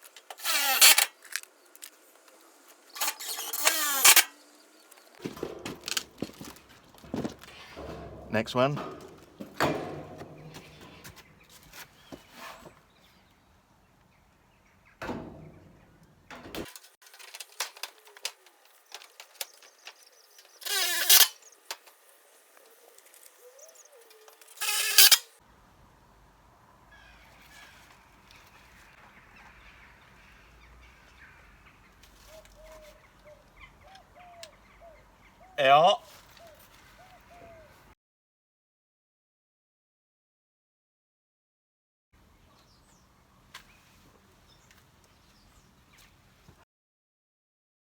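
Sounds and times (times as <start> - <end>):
cordless drill driving screws: 0.3 - 1.9, 2.9 - 4.4, 20.6 - 21.4, 24.3 - 25.3
handling knocks and clicks: 4.9 - 12.3.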